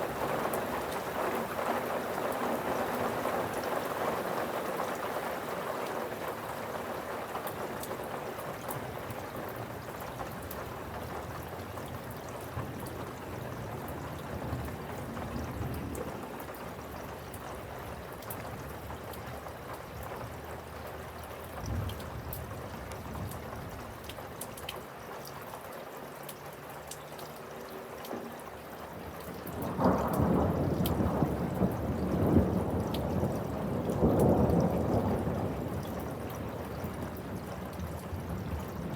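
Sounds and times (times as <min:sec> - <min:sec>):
raindrops ticking on a surface: 0:00.0 - 0:38.9
steady rain: 0:00.0 - 0:38.9
thunder rumbling: 0:29.6 - 0:38.9.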